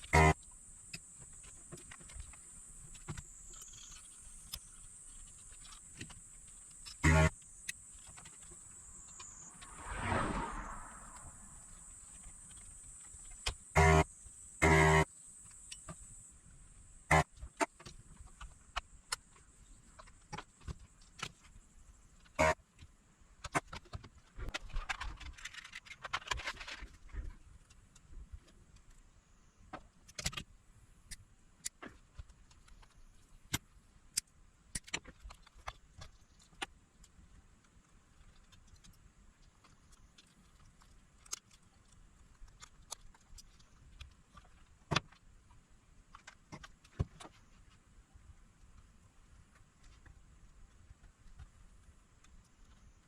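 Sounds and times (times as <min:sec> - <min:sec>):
rustling scrape: 0:01.4 - 0:13.5.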